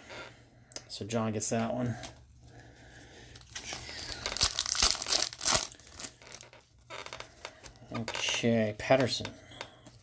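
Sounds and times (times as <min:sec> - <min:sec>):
wrapper crinkling and tearing: 0:03.4 - 0:07.2.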